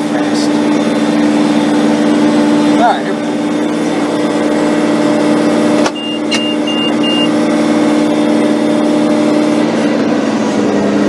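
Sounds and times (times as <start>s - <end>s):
tractor diesel engine running: 0.0s - 11.0s
short electronic beeps: 5.9s - 7.4s.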